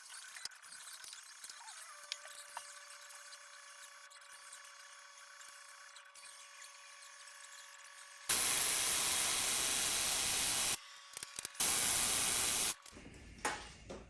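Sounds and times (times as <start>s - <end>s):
hissing spray bursts: 8.3s - 10.8s, 11.6s - 12.8s.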